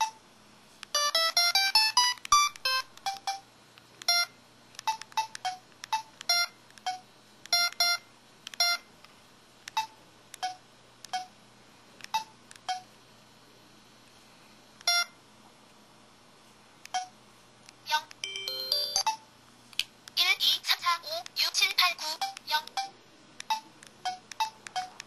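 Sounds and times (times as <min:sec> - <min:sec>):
phone keypad beeping: 0:01.0 - 0:03.4, 0:04.0 - 0:08.9, 0:18.2 - 0:19.2, 0:22.2 - 0:25.0.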